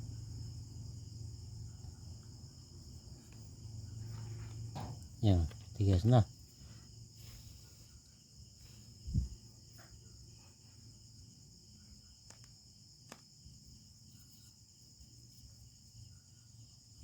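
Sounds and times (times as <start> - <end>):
crickets trilling: 0.0 - 17.0
soft thump: 4.5 - 5.2.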